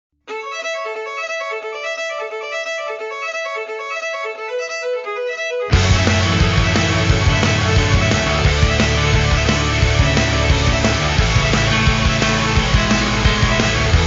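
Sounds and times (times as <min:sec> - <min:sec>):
violin playing fast notes: 0:00.3 - 0:14.0
rock band with drums: 0:05.7 - 0:14.0.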